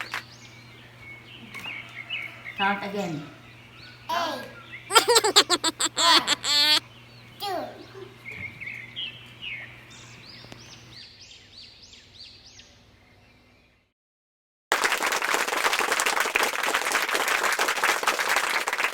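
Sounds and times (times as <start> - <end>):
bird chirping: 3.5 - 7.4
applause: 14.7 - 18.9.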